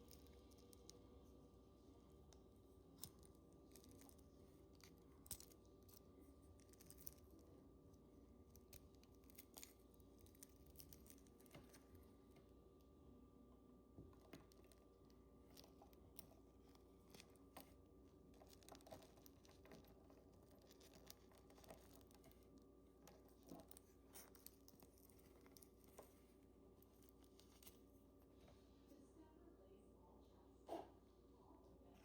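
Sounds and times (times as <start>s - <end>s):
low steady hum: 0.0s - 32.0s
packaging clicks and rustles: 15.4s - 27.9s.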